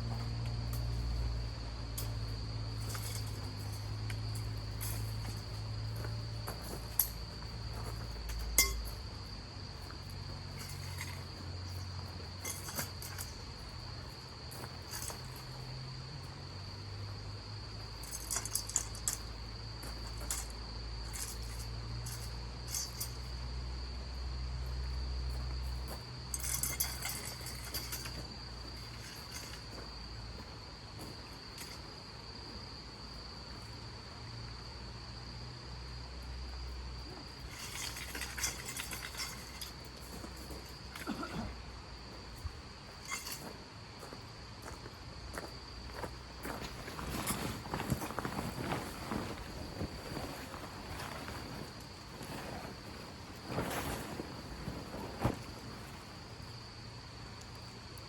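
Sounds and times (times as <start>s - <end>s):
crickets trilling: 0.0s - 58.0s
light clinks: 0.1s - 15.8s, 17.8s - 23.5s, 25.3s - 30.0s, 37.0s - 41.6s, 42.3s - 49.4s.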